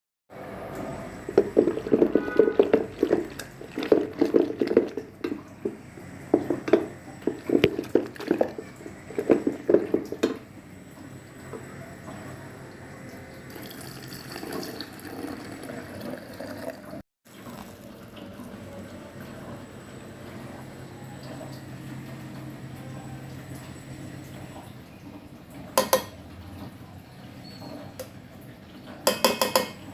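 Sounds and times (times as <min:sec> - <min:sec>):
water running and splashing: 0:01.3 - 0:10.3.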